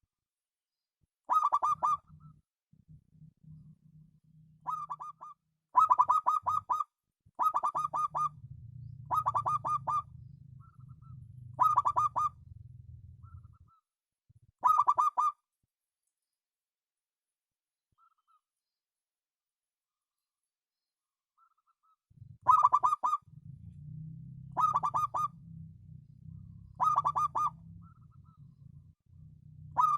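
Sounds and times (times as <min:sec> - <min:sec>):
dove cooing in staccato bursts: 0:01.3 - 0:02.4, 0:04.5 - 0:13.8, 0:14.6 - 0:15.4, 0:22.2 - 0:29.9.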